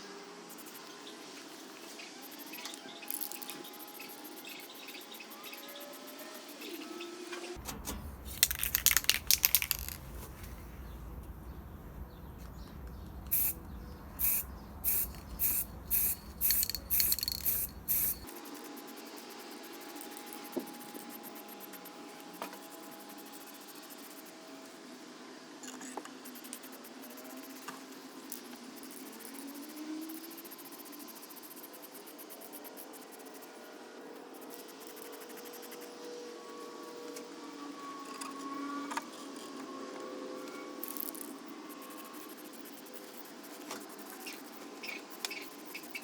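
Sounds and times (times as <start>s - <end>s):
hissing spray bursts: 13.3s - 13.6s, 14.2s - 18.3s.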